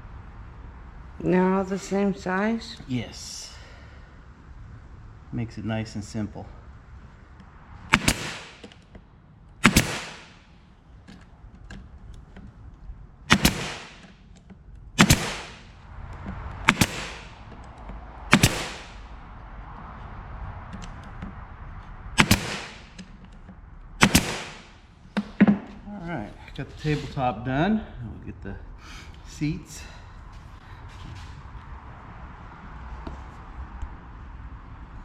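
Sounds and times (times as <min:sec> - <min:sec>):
brad nailer firing with hiss: 0:07.9 - 0:08.8, 0:09.6 - 0:10.5, 0:13.3 - 0:14.2, 0:15.0 - 0:15.8, 0:16.6 - 0:17.5, 0:18.3 - 0:19.0, 0:22.2 - 0:23.1, 0:24.0 - 0:25.5.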